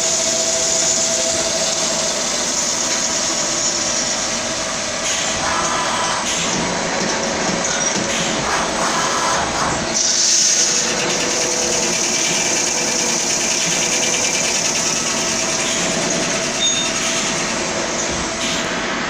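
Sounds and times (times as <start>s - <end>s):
lathe machine noise: 0.0s - 19.0s
machine hiss: 4.9s - 6.8s, 8.1s - 19.0s.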